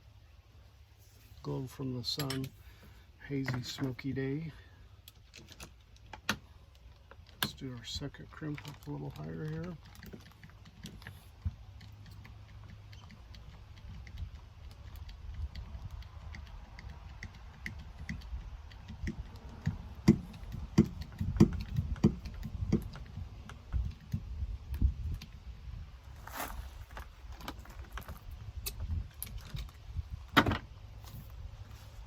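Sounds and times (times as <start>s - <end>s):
hydraulic crimper sharp knocks: 18.8s - 23.1s.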